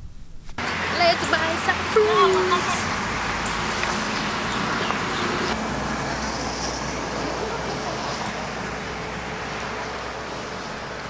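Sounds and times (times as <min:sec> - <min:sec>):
faint voices: 0:00.6 - 0:03.2, 0:06.9 - 0:08.8
road traffic: 0:00.6 - 0:11.0.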